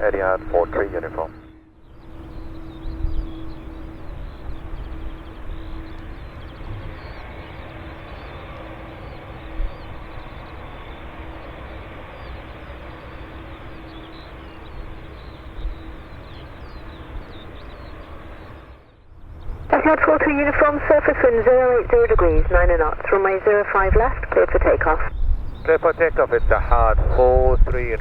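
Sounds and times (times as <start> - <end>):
faint steady hum: 0.0 - 28.0
jet airliner engines rushing: 0.0 - 28.0
wind rumble on microphone: 0.0 - 28.0.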